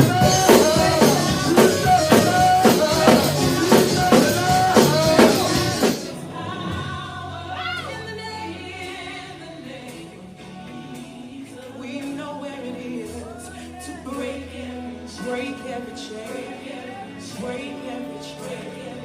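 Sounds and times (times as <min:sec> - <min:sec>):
drums keeping a steady beat: 0:00.0 - 0:07.9
gospel band playing: 0:00.0 - 0:19.0
person singing: 0:00.0 - 0:19.0.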